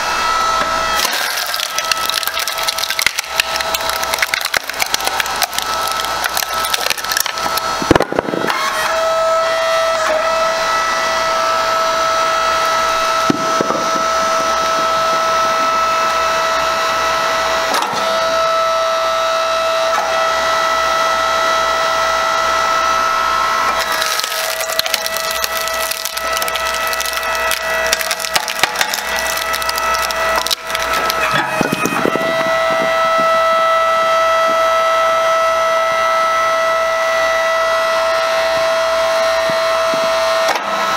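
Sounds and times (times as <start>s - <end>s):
hydraulic motor and pump whine: 0.0s - 40.9s
wood cracking and splintering: 1.0s - 8.7s, 23.8s - 32.6s.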